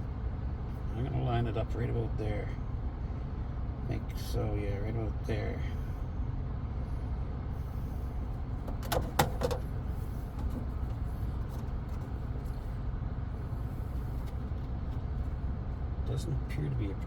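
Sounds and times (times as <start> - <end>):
air-conditioning blower: 0.0 - 17.0
engine idling rumble: 0.0 - 17.0.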